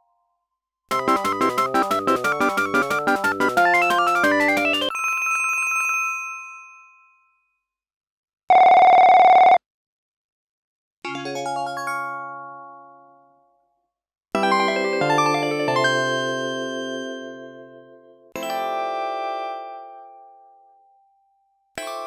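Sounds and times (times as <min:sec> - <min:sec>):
synthesized chord: 0:00.9 - 0:04.9
synthesized ringtone melody: 0:00.9 - 0:05.1
bell-like chime: 0:04.6 - 0:07.5.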